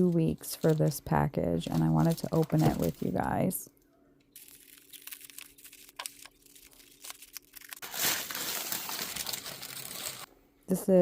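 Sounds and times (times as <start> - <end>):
package wrapping crinkling: 0.0 - 3.3, 4.4 - 10.3
wrapping tearing: 0.3 - 3.2, 4.4 - 10.3.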